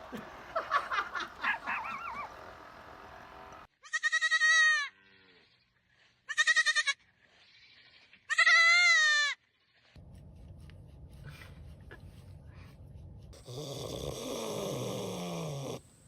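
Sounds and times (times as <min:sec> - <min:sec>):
young farm animal bleating: 0:03.8 - 0:05.6, 0:06.2 - 0:09.4.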